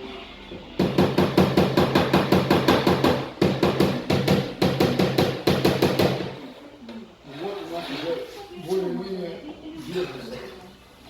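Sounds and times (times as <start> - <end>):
hammer tapping sheet metal: 0.8 - 6.3.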